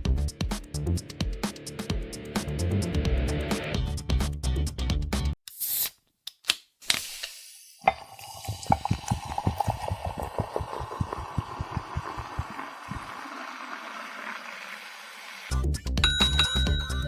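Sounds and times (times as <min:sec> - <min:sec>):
liquid pouring and fizzing: 0:07.8 - 0:15.5
gurgling pops: 0:07.9 - 0:13.7.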